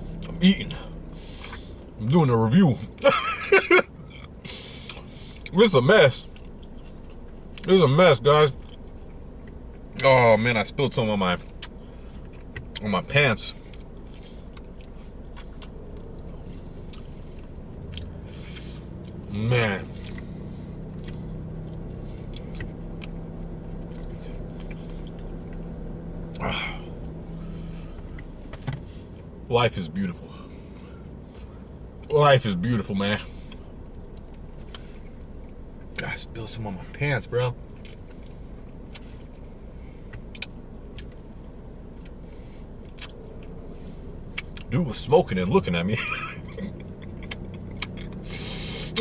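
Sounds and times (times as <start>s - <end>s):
low rumble: 0.0s - 2.0s, 13.5s - 29.5s
car engine idling: 0.0s - 49.0s
eating clicks and smacks: 40.1s - 41.2s, 42.8s - 43.2s, 47.0s - 48.2s.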